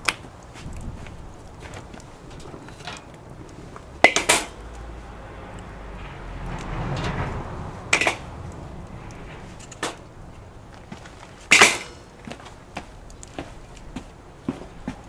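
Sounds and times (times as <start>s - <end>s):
sharp cracks and knocks: 0.0s - 3.4s
wood fire crackling: 0.0s - 15.0s.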